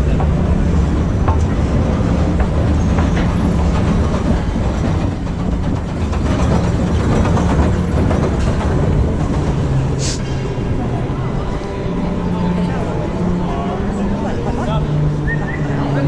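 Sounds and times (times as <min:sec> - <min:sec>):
large vehicle low rumble: 0:00.0 - 0:16.0
short sharp hiss: 0:10.0 - 0:10.3.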